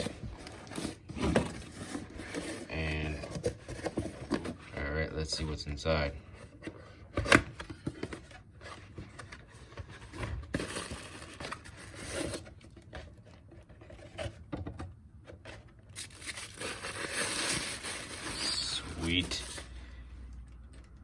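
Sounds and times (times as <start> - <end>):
packing material rustling: 15.9 - 20.0
small scrapes: 16.0 - 19.8.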